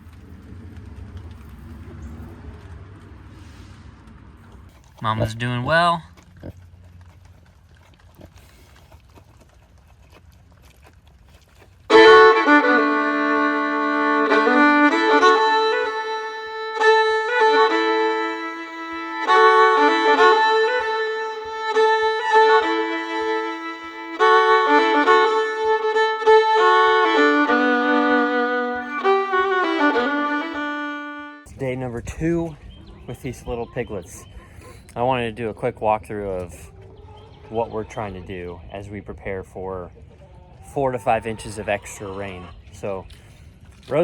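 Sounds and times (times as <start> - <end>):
instrumental music with held notes: 11.9 - 31.5.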